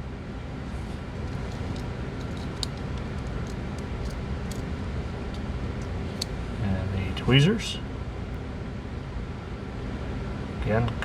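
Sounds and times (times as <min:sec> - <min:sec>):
low background hum: 0:00.0 - 0:11.0
pocket knife clicking: 0:01.3 - 0:04.7.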